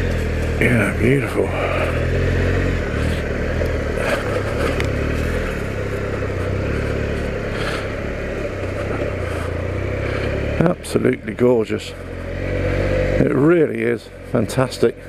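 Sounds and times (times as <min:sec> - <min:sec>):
motorcycle engine running: 0:00.0 - 0:15.0.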